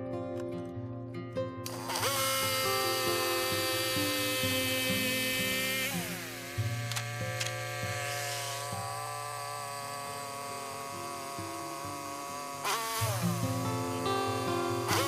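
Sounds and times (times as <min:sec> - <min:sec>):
strummed sliding chord: 0:00.0 - 0:15.0.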